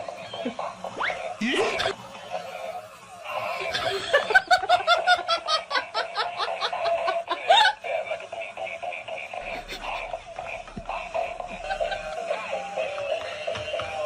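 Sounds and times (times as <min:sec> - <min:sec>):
person laughing: 0:01.4 - 0:12.6.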